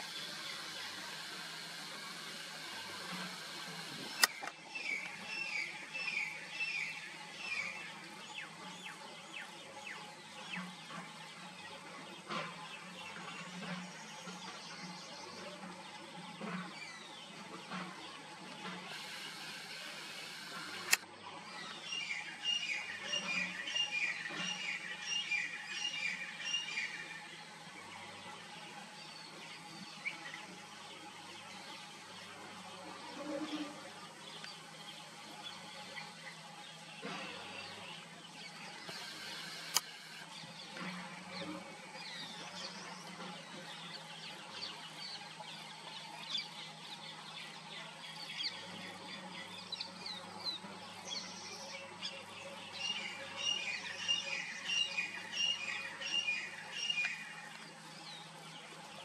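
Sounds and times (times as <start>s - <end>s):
steady hiss: 0.0s - 11.4s, 18.3s - 21.1s, 21.8s - 48.9s
sharp click: 20.5s - 21.1s, 38.9s - 40.0s.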